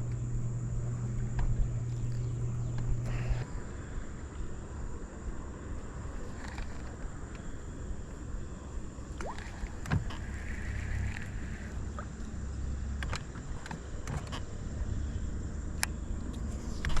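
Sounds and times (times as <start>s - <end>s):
small boat engine rumble: 0.0s - 17.0s
light clicks: 15.8s - 17.0s.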